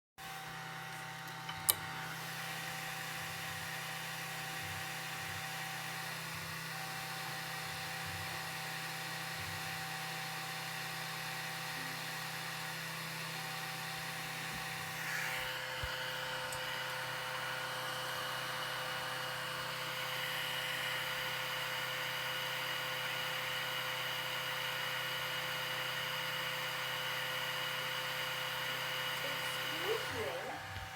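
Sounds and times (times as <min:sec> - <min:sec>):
stepper motors whining: 0:29.0 - 0:30.9.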